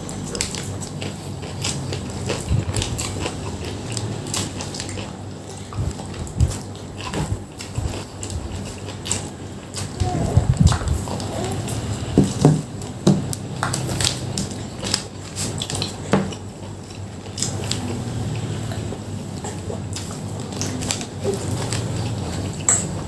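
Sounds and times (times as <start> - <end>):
person chewing: 0.0 - 23.0
utensils clicking on plate: 19.9 - 23.0.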